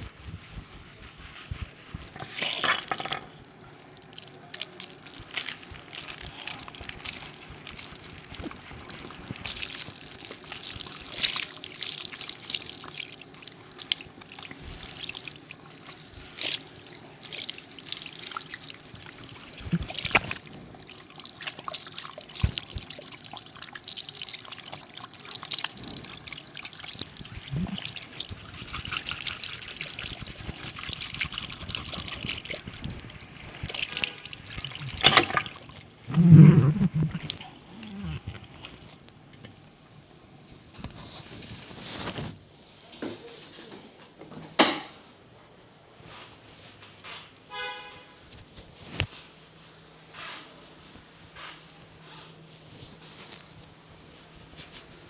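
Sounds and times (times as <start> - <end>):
water pouring and trickling: 2.1 - 37.7
water splashes: 3.6 - 37.6.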